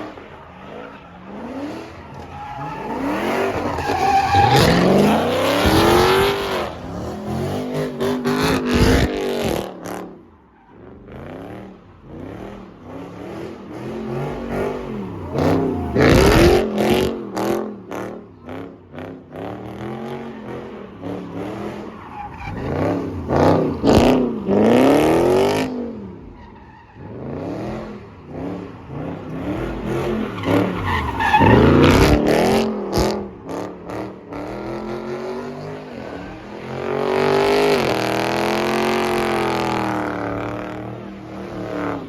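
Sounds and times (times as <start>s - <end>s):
car engine revving hard: 2.6s - 10.1s, 11.0s - 21.9s, 22.5s - 26.2s, 27.0s - 42.0s.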